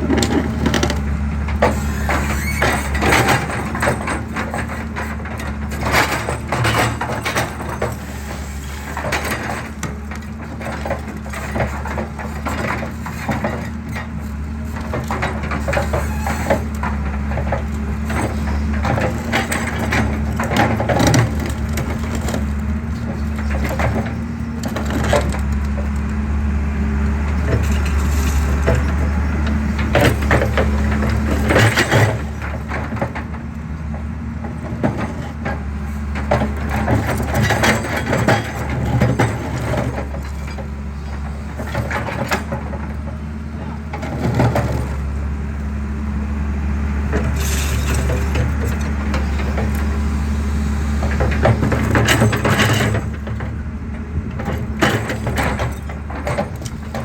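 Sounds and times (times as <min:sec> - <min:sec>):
excavator engine droning: 0:00.0 - 0:57.0.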